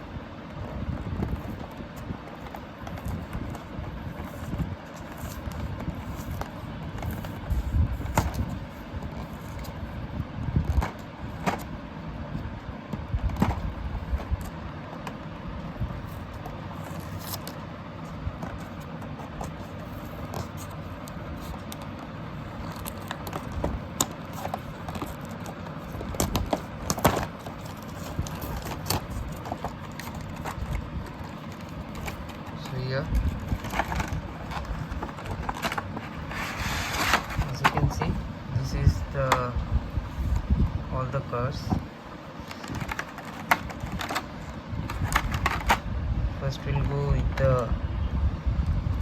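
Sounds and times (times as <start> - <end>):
packaging being opened by hand: 0.5 - 10.0, 16.0 - 17.6, 18.3 - 40.4, 42.4 - 45.8.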